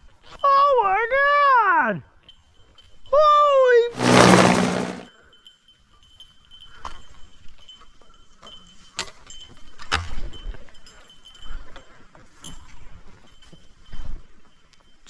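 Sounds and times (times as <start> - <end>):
small bell tinkling: 2.2 - 3.6, 5.3 - 15.0.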